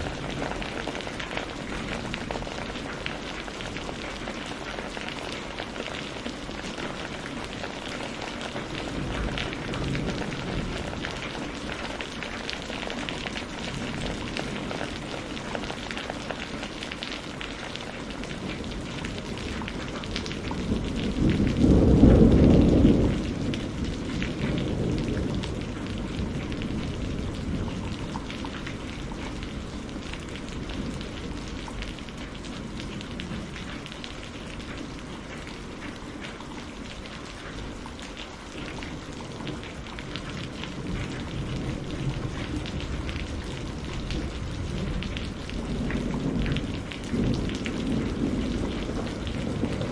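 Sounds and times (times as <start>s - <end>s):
steady rain falling: 0.0s - 49.9s
deep rumble of thunder: 6.9s - 15.8s, 18.4s - 35.6s, 38.8s - 49.9s.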